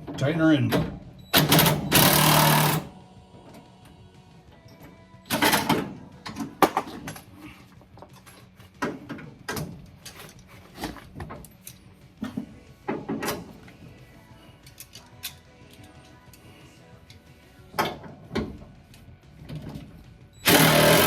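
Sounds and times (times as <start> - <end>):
metallic knocks and clanks of tools: 8.0 - 13.8.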